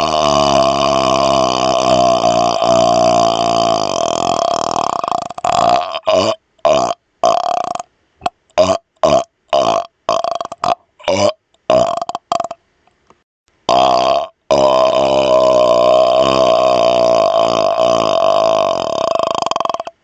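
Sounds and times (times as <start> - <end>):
man burping: 0.0 - 12.6, 13.7 - 20.0.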